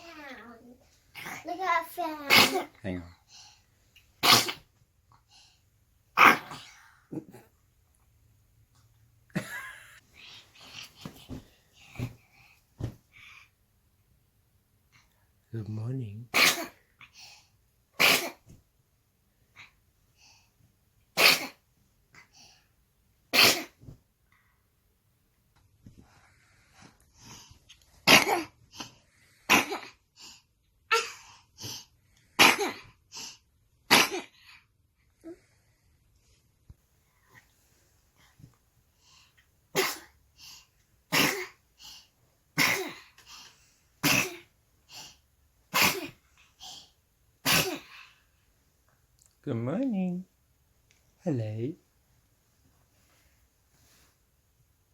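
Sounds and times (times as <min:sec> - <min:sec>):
baby sneezing: 0:02.2 - 0:02.8, 0:04.2 - 0:04.7, 0:06.2 - 0:06.7, 0:16.3 - 0:16.8, 0:18.0 - 0:18.6, 0:21.2 - 0:21.6, 0:23.3 - 0:23.9, 0:28.0 - 0:28.6, 0:29.5 - 0:30.0, 0:32.4 - 0:33.0, 0:33.9 - 0:34.4, 0:39.8 - 0:40.2, 0:41.1 - 0:41.6, 0:42.6 - 0:43.1, 0:44.0 - 0:44.5, 0:45.7 - 0:46.3, 0:47.4 - 0:48.0
small faint sounds: 0:34.4 - 0:54.9.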